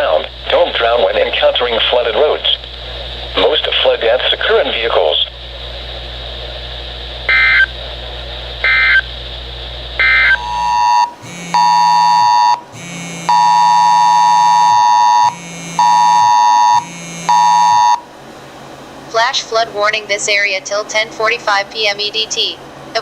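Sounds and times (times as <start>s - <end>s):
digital data bursts from radio: 0.0s - 2.6s, 7.3s - 7.8s, 8.6s - 9.1s, 10.0s - 18.0s
phone buzzing on vibrate: 7.2s - 7.8s, 8.6s - 9.1s, 10.0s - 18.1s
two-tone alert beep: 10.0s - 18.0s.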